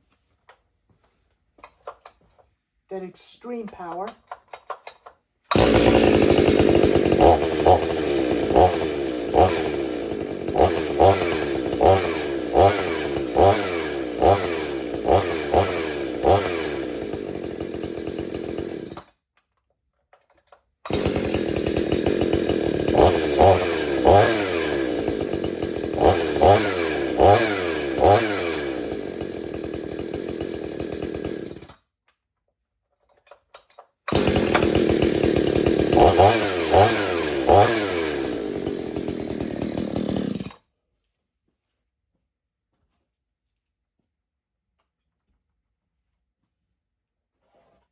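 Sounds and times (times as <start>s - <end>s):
chainsaw idling and revving: 5.5s - 19.1s, 20.9s - 31.8s, 34.1s - 40.6s.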